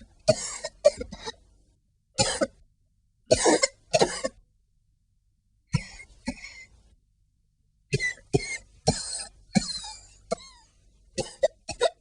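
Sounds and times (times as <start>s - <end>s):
person coughing: 0.2s - 1.4s, 2.2s - 2.6s, 3.3s - 4.4s, 7.9s - 12.0s.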